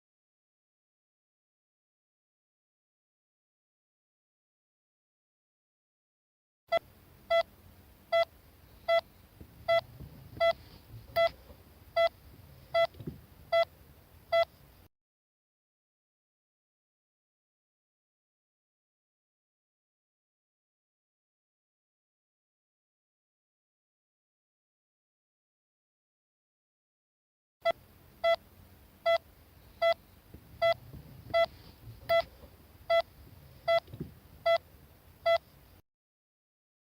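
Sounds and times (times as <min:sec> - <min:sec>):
heart monitor beeping: 0:06.7 - 0:07.5, 0:08.1 - 0:08.3, 0:08.9 - 0:11.4, 0:12.0 - 0:13.7, 0:14.3 - 0:14.6, 0:27.6 - 0:28.4, 0:29.0 - 0:29.2, 0:29.8 - 0:30.0, 0:30.6 - 0:35.5
faint low hum: 0:06.7 - 0:14.9, 0:27.6 - 0:35.8.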